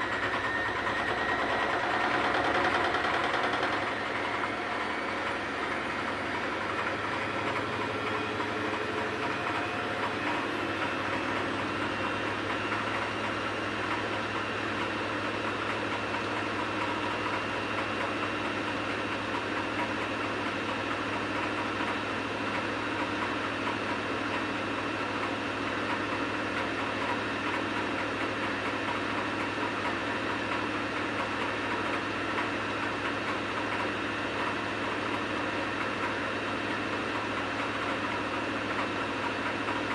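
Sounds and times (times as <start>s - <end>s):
washing machine drum turning: 0.0s - 14.1s
washing machine motor hum: 0.0s - 39.9s.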